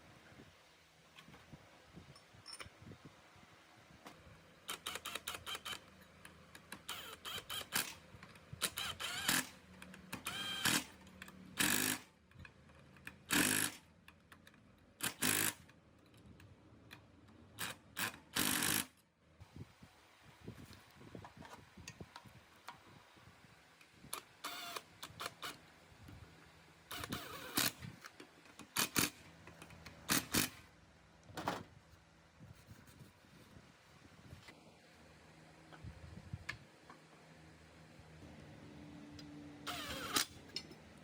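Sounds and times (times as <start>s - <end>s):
metal parts scraping and clanking: 39.7s - 41.0s.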